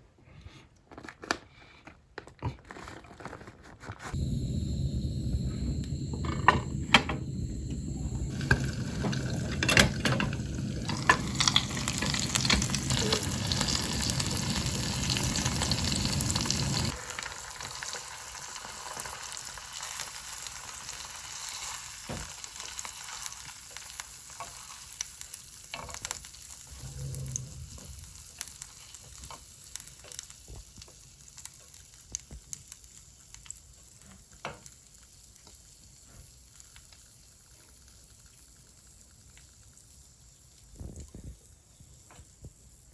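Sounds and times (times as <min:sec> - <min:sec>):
low rumble: 0:04.2 - 0:16.9, 0:26.7 - 0:28.4
dumplings sizzling in a pan: 0:04.2 - 0:27.2, 0:27.9 - 0:42.9.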